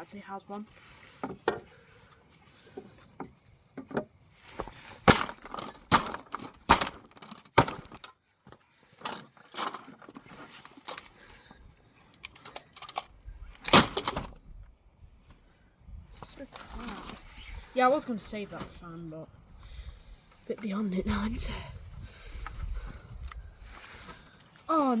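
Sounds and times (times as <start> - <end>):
plastic being smashed: 4.9 - 8.2, 13.6 - 14.3.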